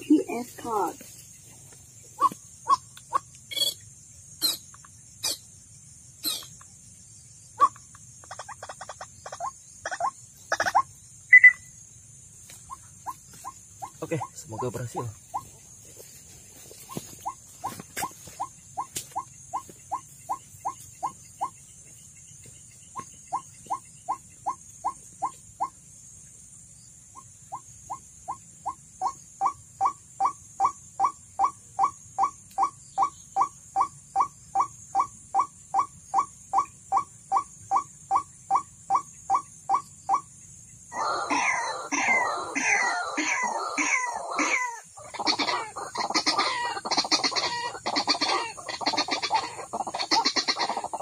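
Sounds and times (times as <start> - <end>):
ragged bird calling: 2.1 - 3.8, 4.4 - 5.5, 6.2 - 6.6, 7.6 - 11.6, 12.6 - 15.6, 16.8 - 21.6, 40.9 - 51.0
bird call through speaker: 40.9 - 50.8.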